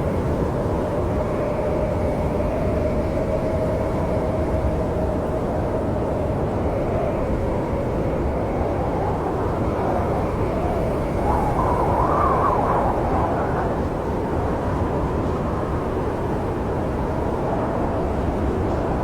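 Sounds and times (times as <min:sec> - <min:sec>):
storm wind rumbling: 0:00.0 - 0:19.0
wind howling: 0:05.7 - 0:16.6.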